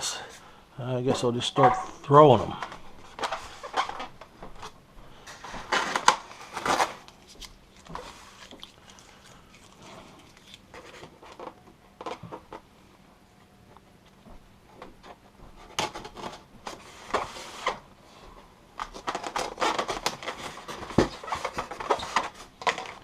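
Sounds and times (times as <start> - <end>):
styrofoam scraping and creaking: 2.4 - 12.5, 15.7 - 17.9, 18.8 - 23.0.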